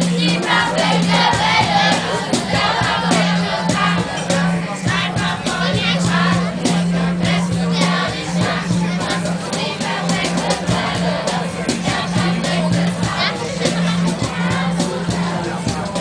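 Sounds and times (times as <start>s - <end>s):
group of people singing: 0.0s - 16.0s.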